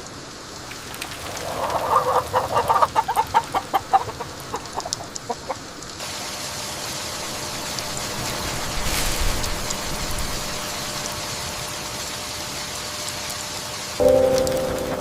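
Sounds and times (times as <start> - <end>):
steady rain: 0.0 - 15.0
chickens clucking: 0.7 - 5.9.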